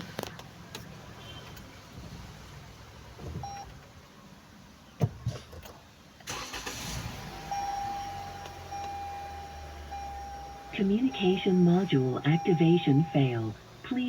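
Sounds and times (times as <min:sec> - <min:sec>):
car engine starting and idling: 0:00.0 - 0:14.0
long electronic tone: 0:07.5 - 0:13.4.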